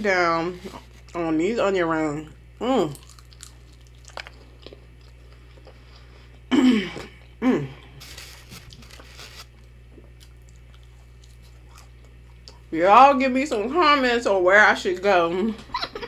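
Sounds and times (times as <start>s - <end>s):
chewing and crunching: 2.8s - 6.5s, 8.0s - 12.8s.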